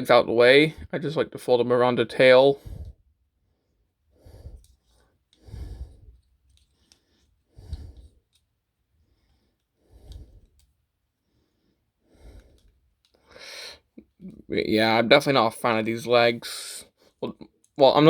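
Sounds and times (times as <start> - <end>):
person breathing out: 4.2 - 4.7, 5.4 - 6.2, 7.1 - 8.2, 11.4 - 13.9.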